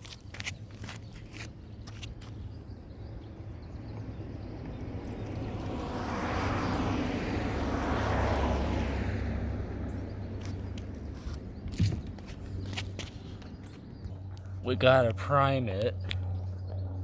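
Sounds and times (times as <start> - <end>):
vehicle passing by: 3.6 - 12.6.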